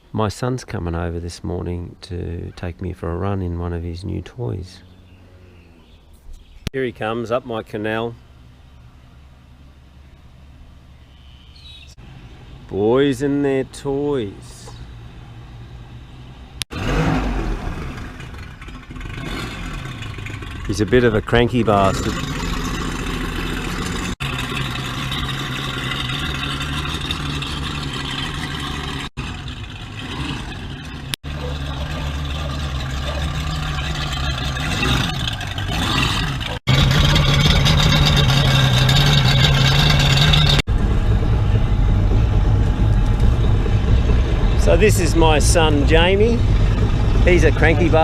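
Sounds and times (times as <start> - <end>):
powerboat engine running: 16.8 - 48.0.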